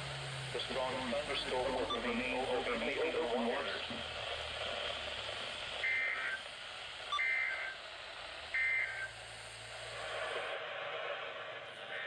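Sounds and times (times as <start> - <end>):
radio hiss: 0.1 - 12.0
buzzy two-tone data warble: 5.8 - 6.4, 7.1 - 7.8, 8.5 - 9.3.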